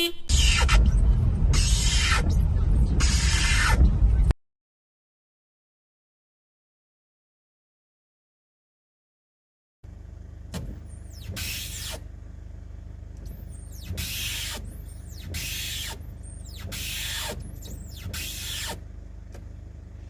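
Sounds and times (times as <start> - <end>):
wiper pivot squeaking: 10.5 - 12.1, 13.1 - 19.5.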